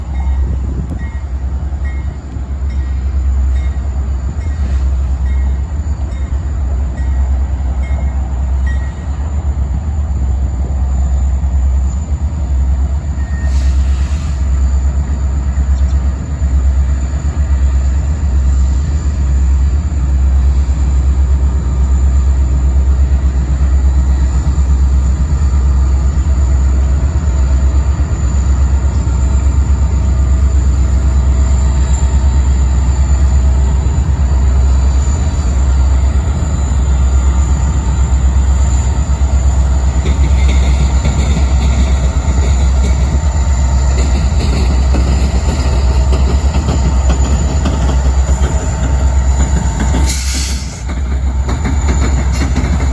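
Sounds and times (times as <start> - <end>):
diesel freight train passing: 0.0 - 52.9.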